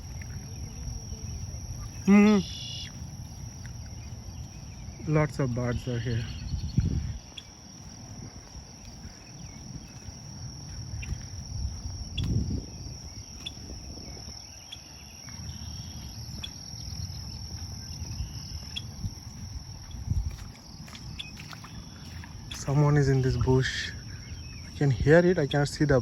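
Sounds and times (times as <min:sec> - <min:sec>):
insect trilling: 0:00.0 - 0:26.0
small bird chirping: 0:03.8 - 0:07.6, 0:10.9 - 0:19.1, 0:19.7 - 0:25.8.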